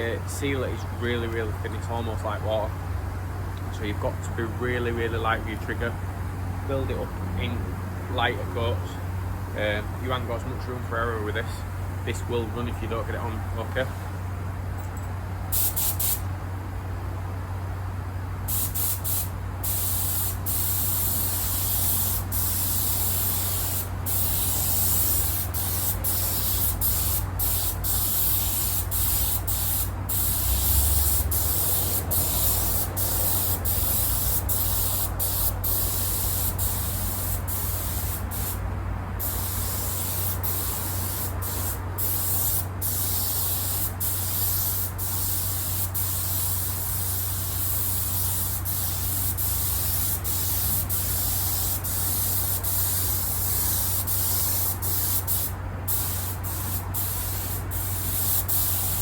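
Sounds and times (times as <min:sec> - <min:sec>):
steady low hum: 0:00.0 - 0:59.0
spray gun hissing: 0:15.5 - 0:16.3, 0:18.5 - 0:38.6, 0:39.2 - 0:59.0.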